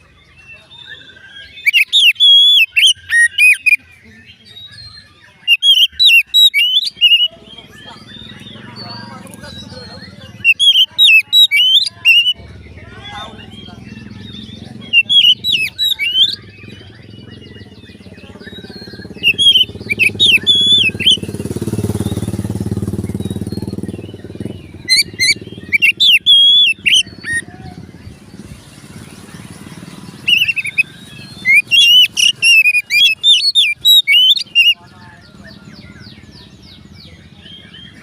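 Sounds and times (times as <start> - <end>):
bird singing whistled phrases: 0.0 - 22.5, 23.1 - 28.9, 30.1 - 38.0.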